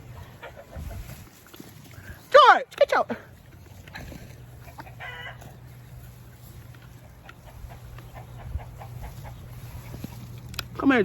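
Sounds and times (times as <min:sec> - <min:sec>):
chicken clucking: 0:00.0 - 0:01.3, 0:03.9 - 0:06.0, 0:06.6 - 0:10.2.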